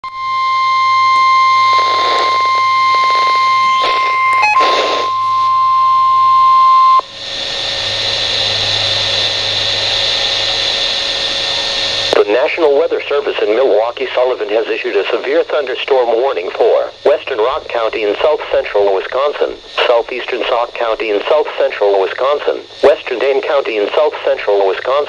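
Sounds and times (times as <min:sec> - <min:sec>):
high warning alarm beep: 0:00.0 - 0:07.1
bursts of static: 0:00.6 - 0:07.1, 0:11.3 - 0:25.0
radio hiss: 0:01.0 - 0:05.7, 0:06.9 - 0:25.0.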